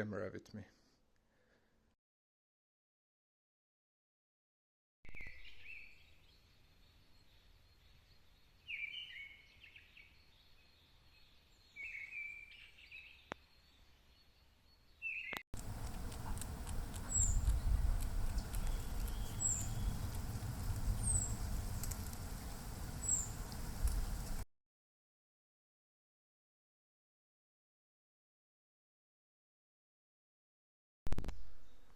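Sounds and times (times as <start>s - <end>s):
birds chirping: 5.1s - 24.4s
low wind rumble: 15.6s - 24.4s.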